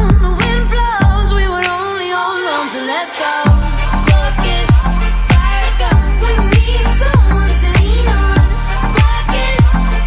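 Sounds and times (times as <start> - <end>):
deep kick drum: 0.0 - 1.6, 3.5 - 9.9
pop song with electronic beat: 0.0 - 10.0.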